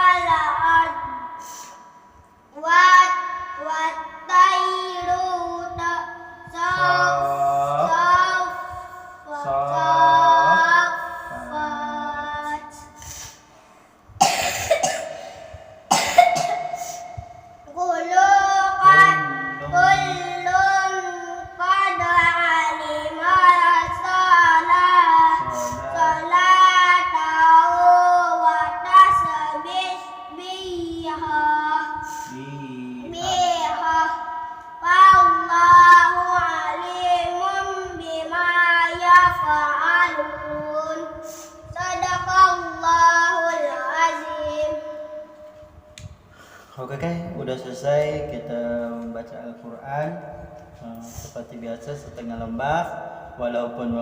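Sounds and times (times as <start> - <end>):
person chanting recitation: 2.6 - 13.0, 17.7 - 34.2.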